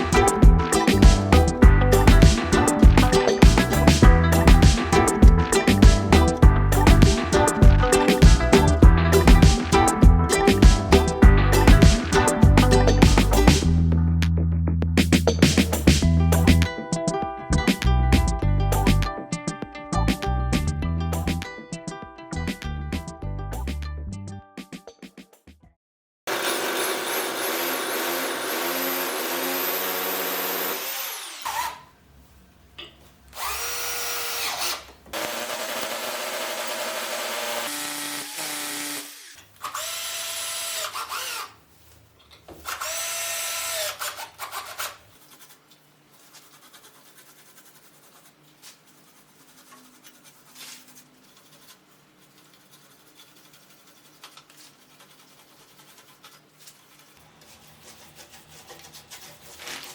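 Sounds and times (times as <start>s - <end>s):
power drill whining: 26.3s - 31.9s, 33.4s - 41.6s, 42.6s - 44.2s.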